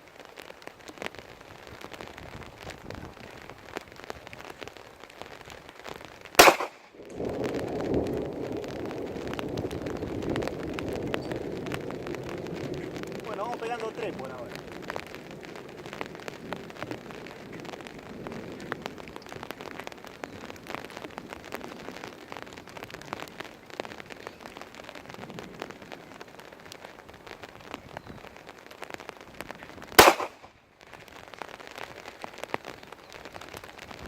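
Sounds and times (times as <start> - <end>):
rain pattering: 0.0 - 34.0
pistol shot: 6.4 - 7.0, 30.0 - 30.5.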